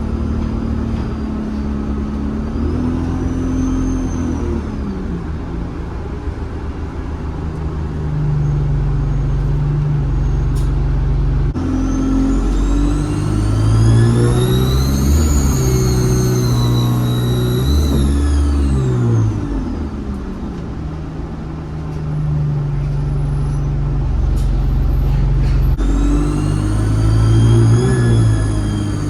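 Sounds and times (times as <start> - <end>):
bus diesel engine: 0.0 - 29.0
turbocharger whistle whine: 2.5 - 5.4, 11.6 - 20.4, 23.0 - 29.0.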